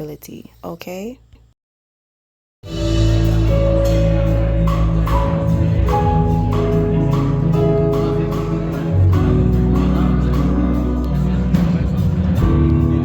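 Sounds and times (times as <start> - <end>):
steady beat: 2.7 - 13.0
sustained low bass: 2.7 - 13.0.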